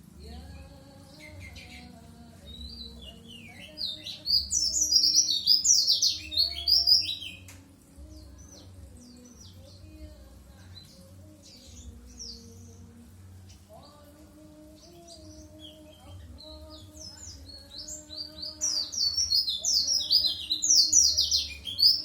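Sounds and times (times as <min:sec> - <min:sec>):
bird chirping and twittering: 0:01.0 - 0:07.6, 0:14.8 - 0:22.0.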